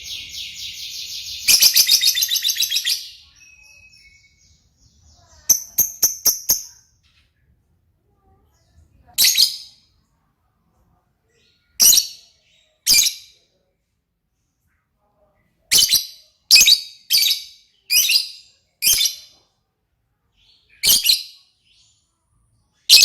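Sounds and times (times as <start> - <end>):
lovebird high-pitched calls: 0.0 - 4.6.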